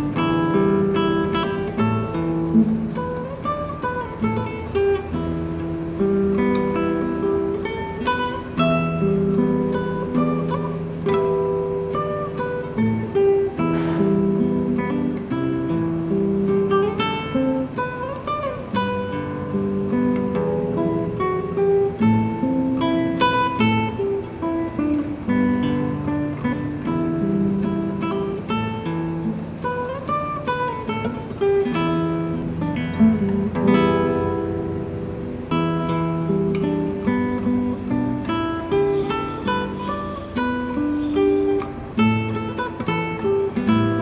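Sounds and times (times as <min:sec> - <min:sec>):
fingerstyle acoustic guitar: 0:00.0 - 0:44.0.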